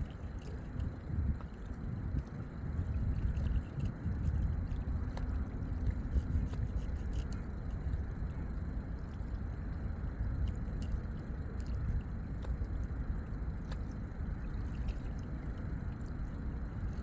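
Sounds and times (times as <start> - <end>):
steady low rumble: 0.0 - 17.0
water lapping and dripping: 0.0 - 17.0
faint ticks: 13.5 - 16.3.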